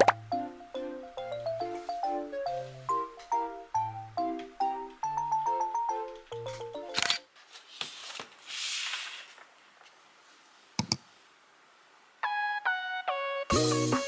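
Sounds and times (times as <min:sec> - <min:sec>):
background music with plucked notes: 0:00.0 - 0:07.0, 0:12.2 - 0:14.0
plastic rustle: 0:07.4 - 0:10.7.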